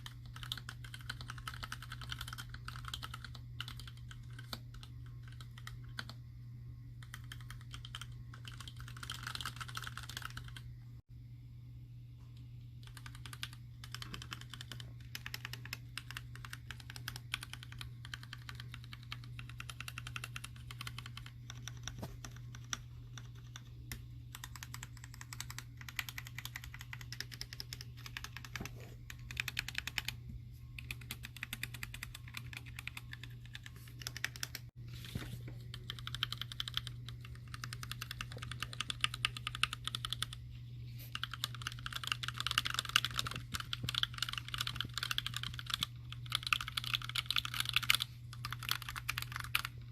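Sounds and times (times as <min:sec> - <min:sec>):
mechanical keyboard typing: 0:00.0 - 0:06.2, 0:07.0 - 0:10.7, 0:12.8 - 0:34.7, 0:35.6 - 0:40.4, 0:41.1 - 0:49.9
low hum: 0:09.8 - 0:16.4.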